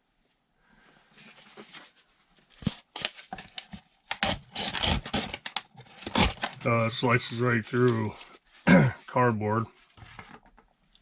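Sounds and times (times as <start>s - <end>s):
knife sawing through cardboard: 4.1s - 6.6s.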